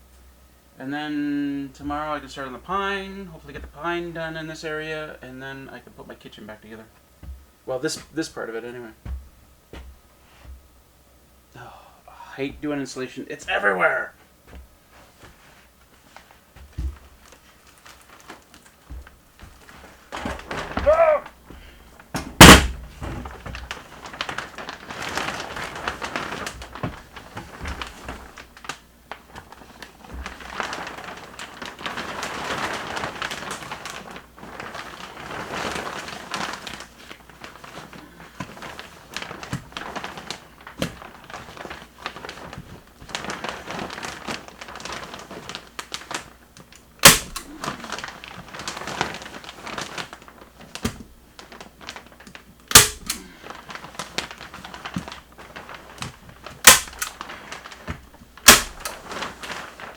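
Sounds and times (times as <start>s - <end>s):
plastic sheeting rustling and crinkling: 1.5s - 10.8s, 11.6s - 59.9s
sharp crack: 20.2s - 21.3s, 22.4s - 22.9s, 47.0s - 47.8s, 52.7s - 53.3s, 56.6s - 57.3s, 58.4s - 59.6s.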